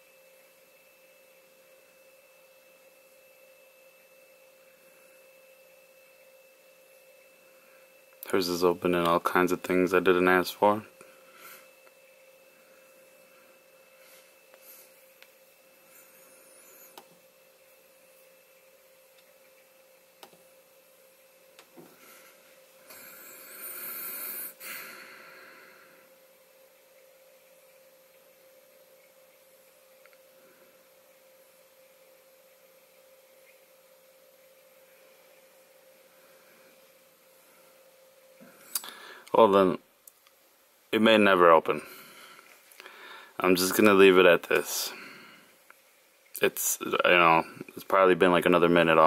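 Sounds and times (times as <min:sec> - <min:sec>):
faint steady hiss: 0:00.0 - 0:49.0
thin even whine: 0:02.8 - 0:26.2
breathy exhale: 0:38.8 - 0:39.3, 0:41.8 - 0:43.4.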